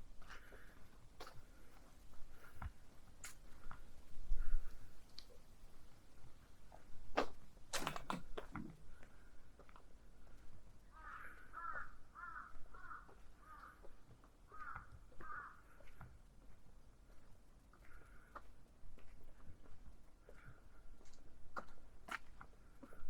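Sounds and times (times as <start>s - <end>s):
crow cawing: 10.9s - 16.0s.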